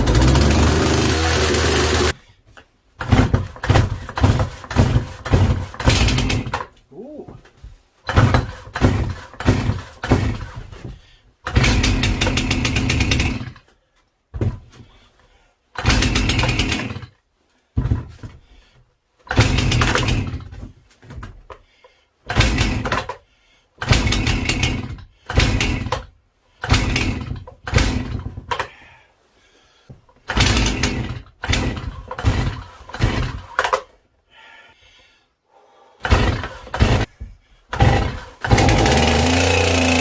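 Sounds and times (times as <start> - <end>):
chainsaw engine running: 0.0 - 2.2, 23.9 - 25.9, 36.0 - 37.1, 37.8 - 40.0
chainsaw starter cord pulls: 0.0 - 2.2, 11.5 - 13.6, 15.8 - 17.1, 26.6 - 28.7, 30.3 - 33.9, 36.0 - 37.1, 37.7 - 40.0.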